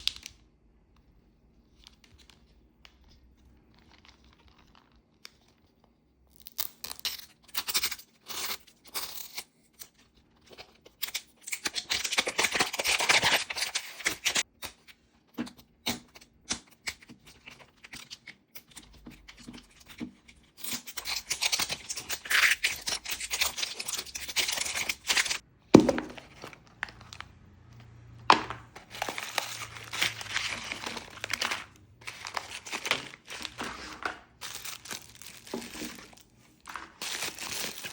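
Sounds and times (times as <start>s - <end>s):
plastic wrappers tearing and crinkling: 10.5s - 14.5s, 20.6s - 27.2s, 28.7s - 37.9s.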